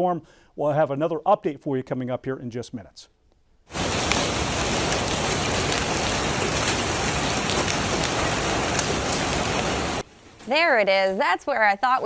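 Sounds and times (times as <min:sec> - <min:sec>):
heavy rain and hail pelting: 0:03.7 - 0:10.4.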